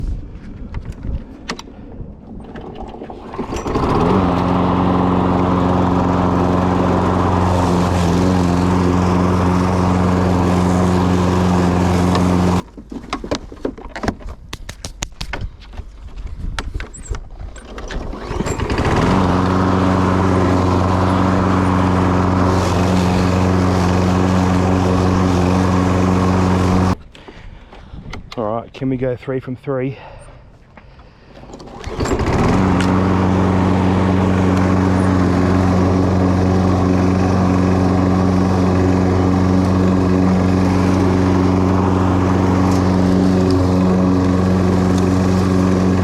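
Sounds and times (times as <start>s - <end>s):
lawn mower engine running: 2.3s - 12.7s, 17.5s - 27.0s, 31.3s - 46.0s
starter cord pull: 31.4s - 33.0s.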